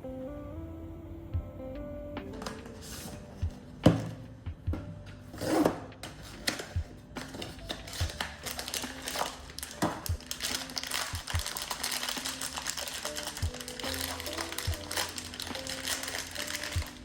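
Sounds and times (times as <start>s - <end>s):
soft background music: 0.0s - 17.0s
packaging rustle: 6.1s - 17.0s
plastic pieces clicking: 7.4s - 17.0s.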